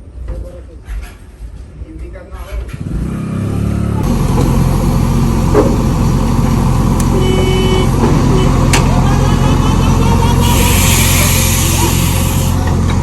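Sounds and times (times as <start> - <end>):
heavy diesel engine droning: 3.0 - 13.0.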